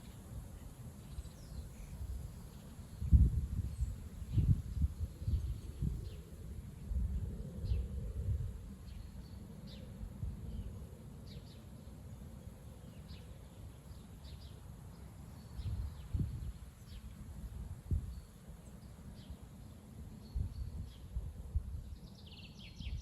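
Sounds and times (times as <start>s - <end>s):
gusty wind buffeting microphone: 1.5s - 10.9s, 15.6s - 18.2s, 20.3s - 23.0s.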